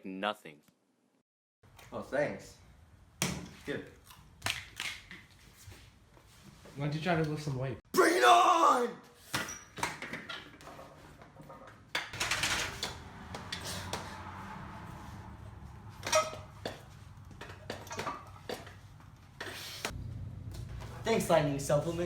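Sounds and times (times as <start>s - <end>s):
weights clanking and knocking: 16.0s - 18.8s.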